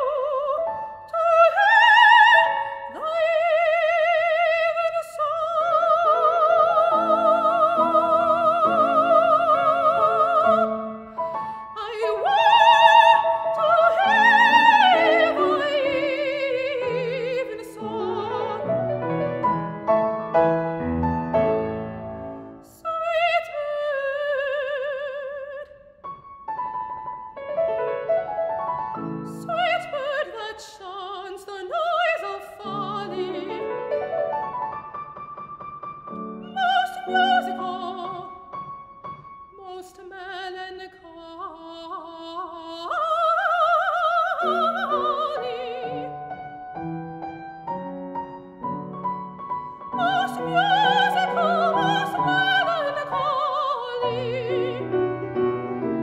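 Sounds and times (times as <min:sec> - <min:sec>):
soprano singing with vibrato: 0:00.0 - 0:19.2, 0:22.1 - 0:25.9, 0:29.2 - 0:34.0, 0:36.2 - 0:38.5, 0:39.6 - 0:46.5, 0:49.8 - 0:55.2
piano accompaniment: 0:00.0 - 0:25.2, 0:26.0 - 0:40.9, 0:42.9 - 0:56.0.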